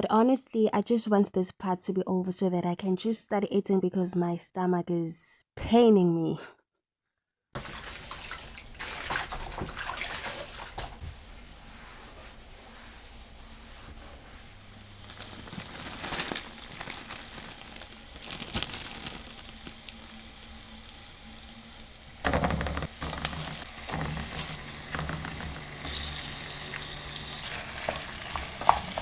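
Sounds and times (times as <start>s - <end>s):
food sizzling in a frying pan: 14.6s - 29.0s
stirring clatter: 22.2s - 29.0s.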